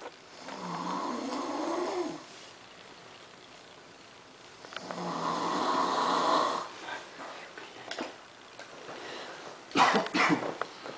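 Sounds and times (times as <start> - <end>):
loud snore: 0.4 - 2.3, 4.8 - 6.7.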